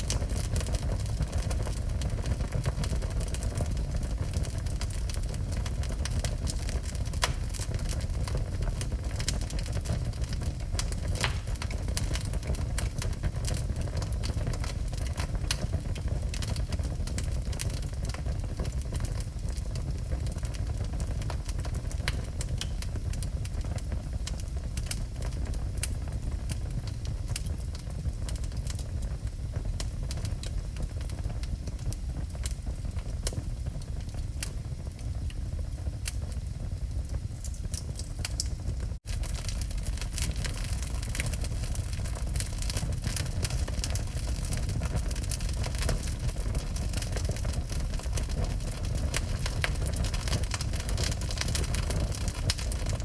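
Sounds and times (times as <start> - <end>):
low fire rumble: 0.0 - 53.0
wood fire crackling and popping: 0.0 - 53.0.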